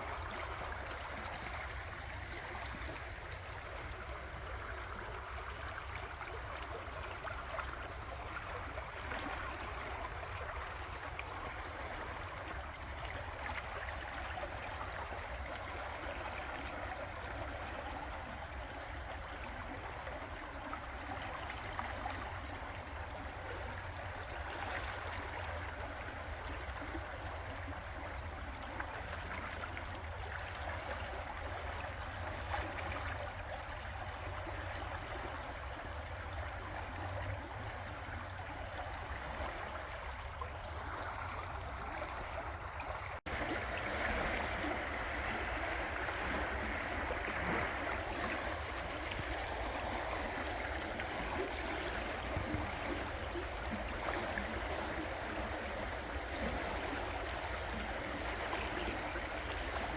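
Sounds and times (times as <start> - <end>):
river water rushing: 36.0 - 59.9.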